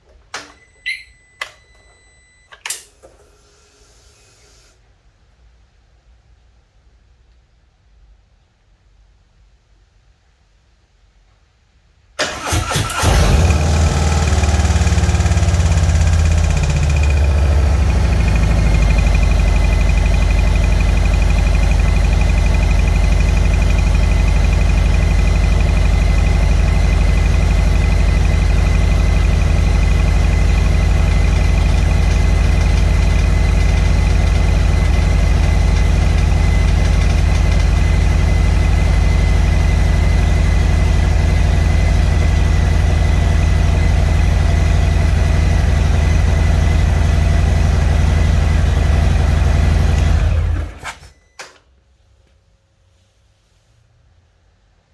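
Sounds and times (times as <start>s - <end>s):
motorcycle rattling: 12.2s - 50.7s
motorcycle starting and idling: 12.2s - 51.6s.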